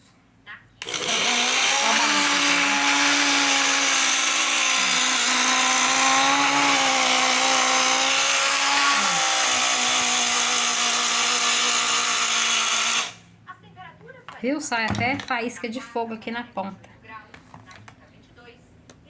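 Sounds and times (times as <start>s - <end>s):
hair dryer running: 0.8s - 13.2s.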